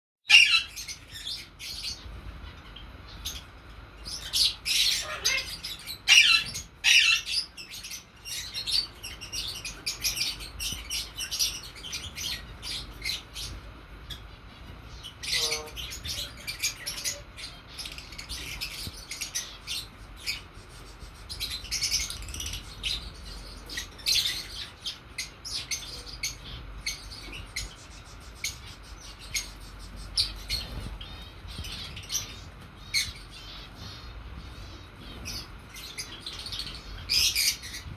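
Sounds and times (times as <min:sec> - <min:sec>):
lovebirds chirping: 0:00.3 - 0:37.9.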